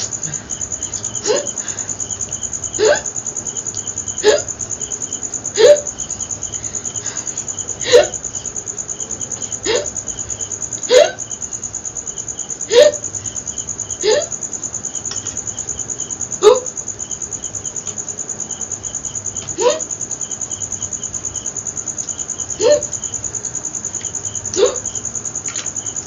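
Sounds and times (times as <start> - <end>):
crickets chirping: 0.0 - 26.0
woman hiccuping: 1.2 - 1.6, 2.8 - 3.1, 4.2 - 4.6, 5.6 - 6.0, 7.8 - 8.2, 9.6 - 10.0, 10.9 - 11.2, 12.7 - 13.0, 14.0 - 14.4, 16.4 - 16.7, 19.6 - 19.9, 22.6 - 22.9, 24.5 - 25.0.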